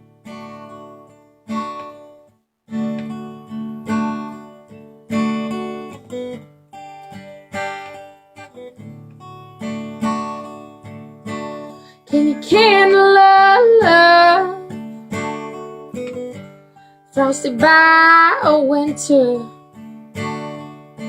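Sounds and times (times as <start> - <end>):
acoustic guitar strumming: 0.0 - 21.0
person singing: 12.1 - 14.7, 17.2 - 19.5.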